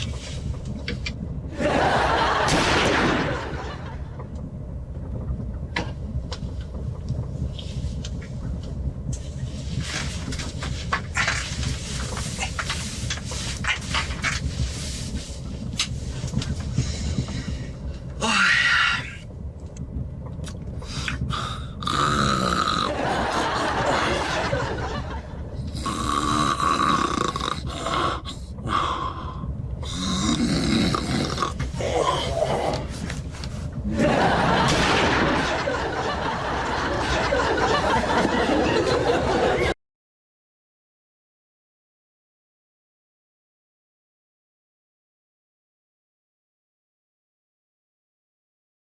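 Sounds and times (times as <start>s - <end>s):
low rumble: 0.0s - 39.7s
person snoring with grunts: 21.2s - 23.0s, 25.7s - 32.9s.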